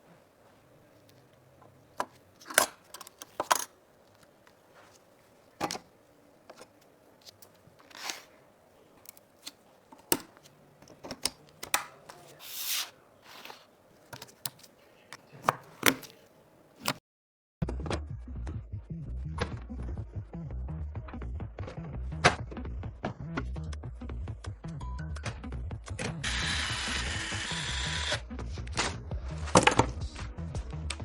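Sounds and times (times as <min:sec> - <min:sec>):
packaging rustling: 0:06.5 - 0:17.0.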